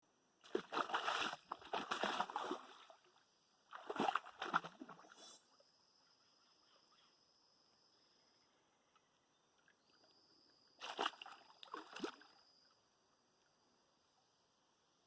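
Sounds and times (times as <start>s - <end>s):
faint high insect drone: 0.0s - 15.0s
water splashing: 0.4s - 3.1s, 3.7s - 5.2s, 10.8s - 12.4s.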